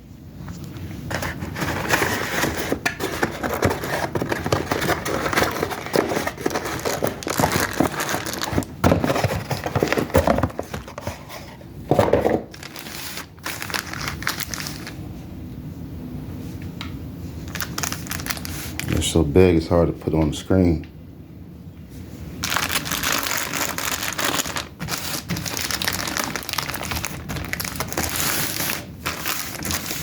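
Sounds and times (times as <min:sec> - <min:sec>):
packaging crinkling: 0:00.6 - 0:11.6, 0:12.4 - 0:15.0, 0:17.4 - 0:19.1, 0:22.4 - 0:30.0.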